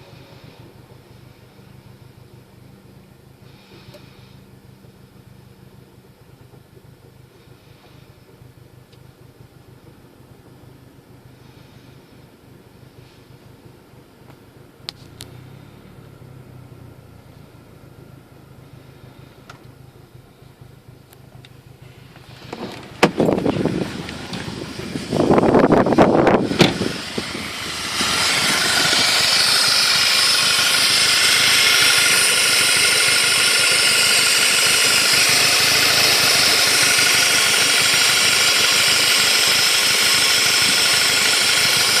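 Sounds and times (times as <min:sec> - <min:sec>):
engine clicks: 0:06.0 - 0:10.9, 0:13.5 - 0:16.2, 0:19.0 - 0:42.0
loud irregular bursts of noise: 0:23.2 - 0:42.0
steady loud hiss of leak: 0:26.4 - 0:42.0.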